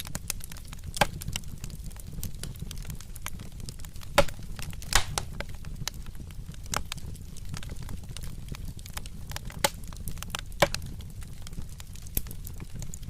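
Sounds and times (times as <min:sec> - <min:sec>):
loud fire pops: 0:00.0 - 0:13.0
wood fire crackling: 0:00.0 - 0:13.0.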